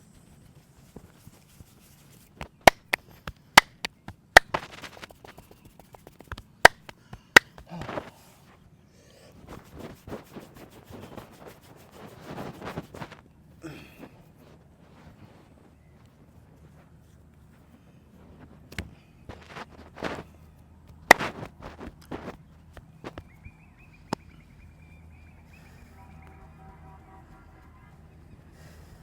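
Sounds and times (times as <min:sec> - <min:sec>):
hands rubbing skin and hair: 0:00.3 - 0:08.6, 0:09.3 - 0:13.2
sharp cracks during massage: 0:01.1 - 0:08.4, 0:09.3 - 0:13.2, 0:18.7 - 0:23.3.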